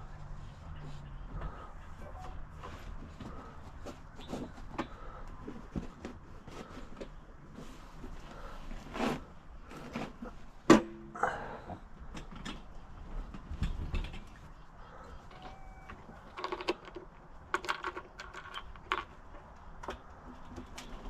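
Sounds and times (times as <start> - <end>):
objects being handled: 15.3 - 21.0.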